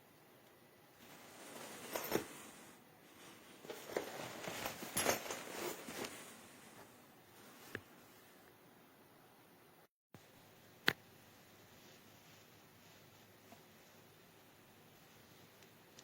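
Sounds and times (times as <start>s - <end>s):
rustling handling noise: 1.0s - 8.4s, 11.4s - 15.8s.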